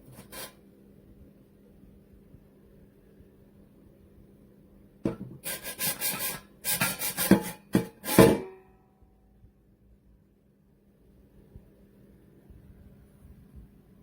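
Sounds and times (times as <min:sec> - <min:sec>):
metal parts scraping and rubbing: 0:00.0 - 0:00.6.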